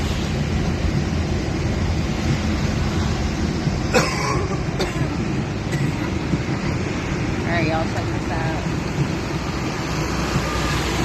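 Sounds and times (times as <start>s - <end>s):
low rumbling noise: 0.0s - 11.0s
person coughing: 3.9s - 6.1s.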